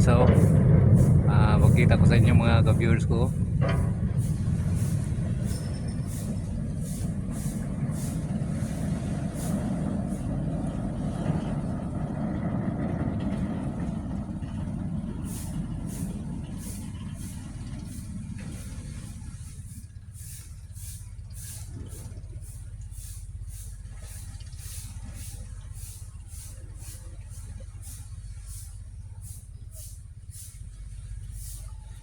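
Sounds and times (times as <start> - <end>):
diesel truck engine rumbling: 0.0 - 32.0.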